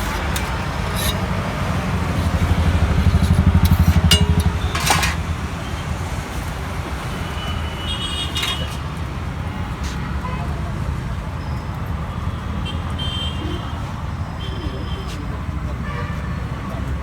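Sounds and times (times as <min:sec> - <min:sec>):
vehicle engine passing by: 0:00.9 - 0:07.2.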